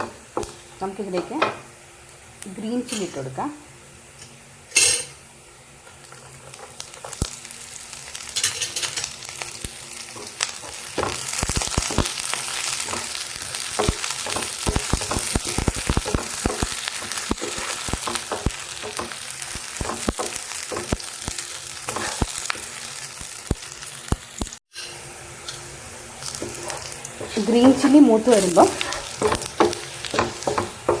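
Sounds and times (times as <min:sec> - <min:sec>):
food sizzling in hot oil: 0:00.0 - 0:31.0
stirring ticks and taps: 0:12.8 - 0:19.2, 0:28.6 - 0:31.0.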